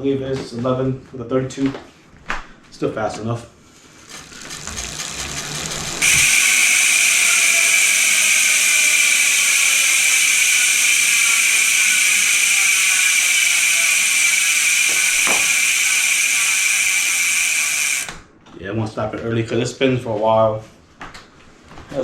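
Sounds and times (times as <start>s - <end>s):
wheel whirring: 3.9s - 18.2s
bicycle freehub buzzing: 4.0s - 18.2s.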